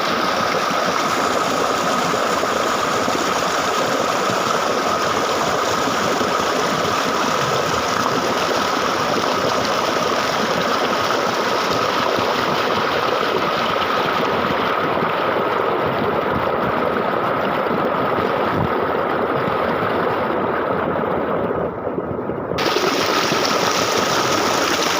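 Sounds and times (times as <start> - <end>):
flowing water rushing: 0.0 - 21.8, 22.6 - 24.9.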